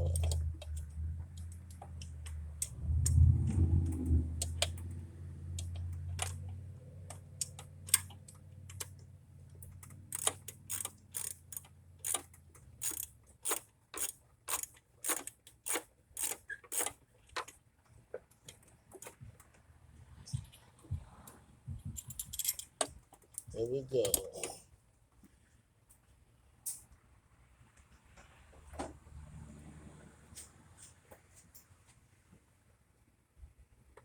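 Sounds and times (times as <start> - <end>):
hand tool clicks: 10.1 - 17.0.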